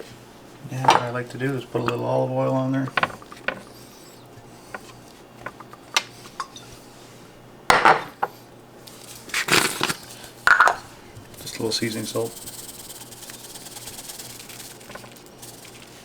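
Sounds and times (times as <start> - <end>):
dishes and utensils clinking: 4.7 - 6.8.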